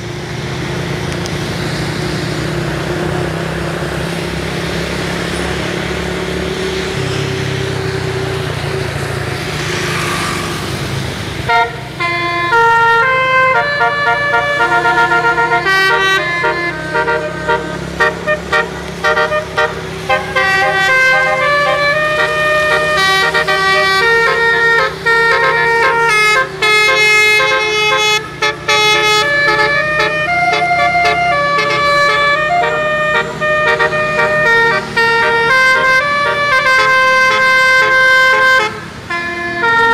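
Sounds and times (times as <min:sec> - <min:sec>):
bus engine and road noise: 0:00.0 - 0:39.9
multi-trumpet horn playing a tune: 0:11.5 - 0:39.9.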